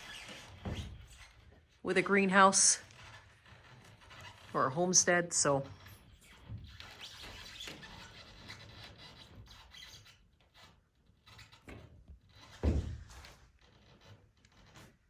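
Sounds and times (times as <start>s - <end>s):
scraping on roof panels: 0.0s - 2.2s, 5.7s - 15.0s.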